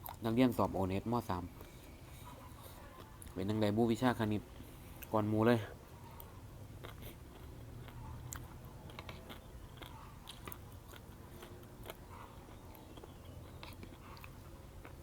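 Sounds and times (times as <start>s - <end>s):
person chewing food: 0.0s - 0.3s, 1.5s - 3.5s, 6.0s - 15.0s.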